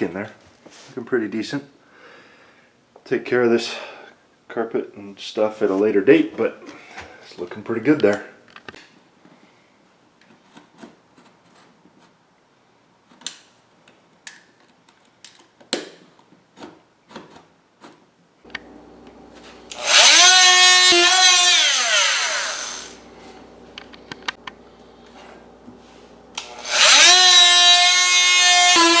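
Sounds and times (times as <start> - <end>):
power tool motor whine: 18.5 - 24.2, 26.2 - 29.0.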